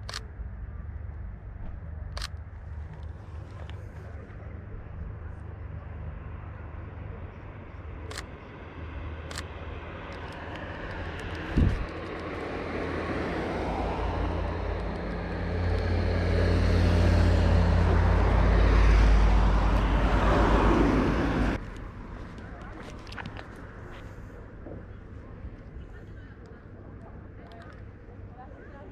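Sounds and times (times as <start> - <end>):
vehicle engine rumble: 0.0 - 28.9
sharp clicks: 9.3 - 12.6, 14.7 - 15.9.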